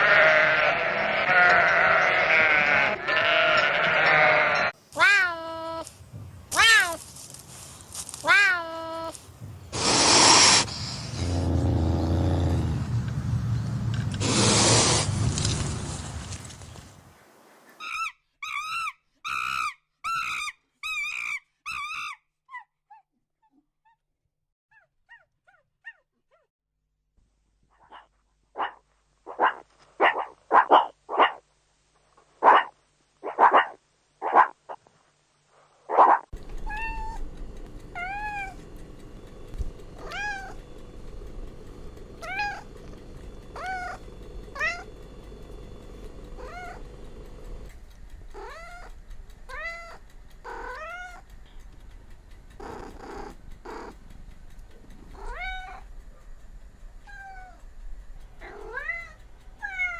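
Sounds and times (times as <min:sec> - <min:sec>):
cats meowing: 0:00.0 - 0:05.8, 0:08.2 - 0:09.2, 0:36.6 - 0:37.2, 0:38.0 - 0:38.6, 0:40.0 - 0:40.6, 0:42.2 - 0:42.7, 0:43.6 - 0:44.9, 0:46.0 - 0:46.9, 0:48.4 - 0:51.2, 0:55.2 - 0:55.9, 0:58.4 - 0:59.9
background hiss: 0:03.7 - 0:17.8, 0:27.2 - 0:59.9.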